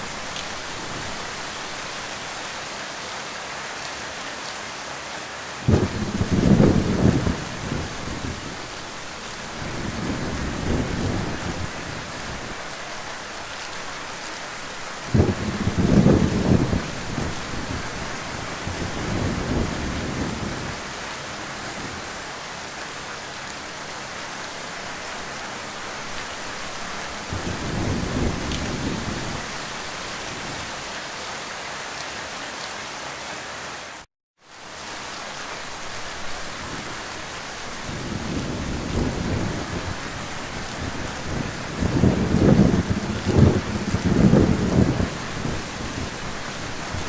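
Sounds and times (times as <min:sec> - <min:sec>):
heavy rain hissing: 0:00.0 - 0:47.0
thunder rolling: 0:05.7 - 0:08.7, 0:09.5 - 0:12.5, 0:15.1 - 0:20.8, 0:27.3 - 0:29.6, 0:37.8 - 0:47.0.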